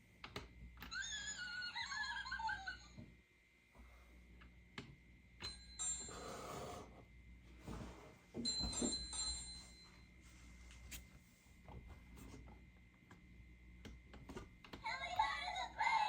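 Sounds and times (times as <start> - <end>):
high-pitched bell dings: 5.4 - 6.4, 8.4 - 10.1.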